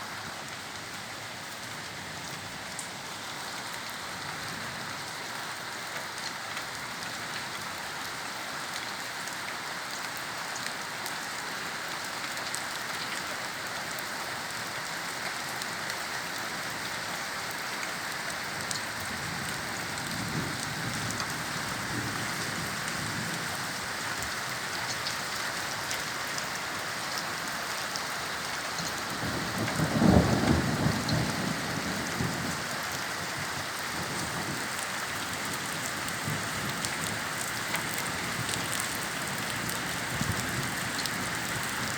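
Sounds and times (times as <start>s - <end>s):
heavy rain falling: 0.1s - 41.9s
rumble of thunder: 29.2s - 32.7s.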